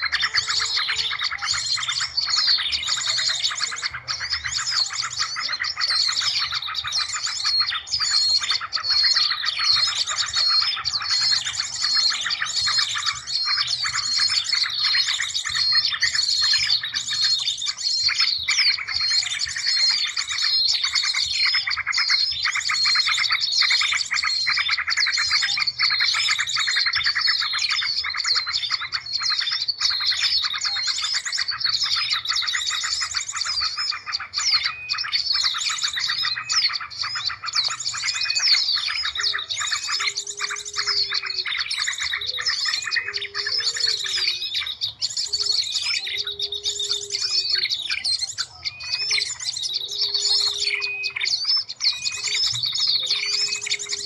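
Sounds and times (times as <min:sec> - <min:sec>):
small birds chirping chorus: 0:00.0 - 0:54.0.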